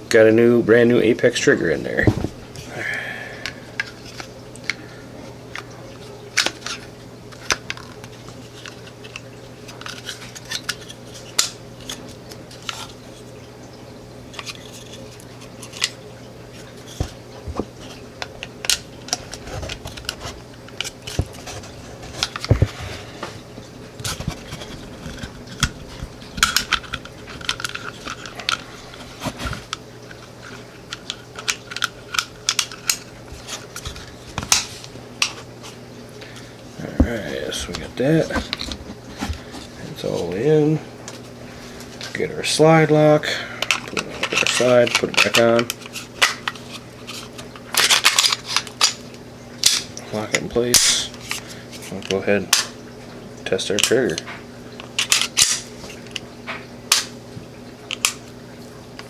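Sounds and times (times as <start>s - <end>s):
steady low hum: 0.0s - 59.0s
pistol parts clicking and clinking: 55.0s - 55.7s.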